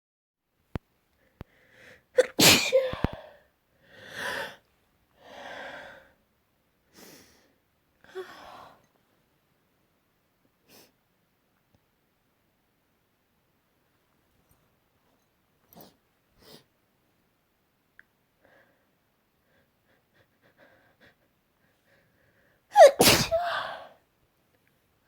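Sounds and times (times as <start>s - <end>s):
quiet breathy sounds: 1.0s - 2.2s, 2.8s - 9.6s, 18.0s - 25.0s
person sneezing loudly: 2.2s - 3.2s, 22.7s - 23.9s.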